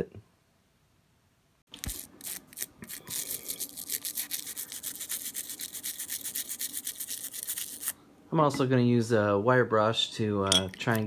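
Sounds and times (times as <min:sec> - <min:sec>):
stiff brush scrubbing: 0:01.8 - 0:08.0.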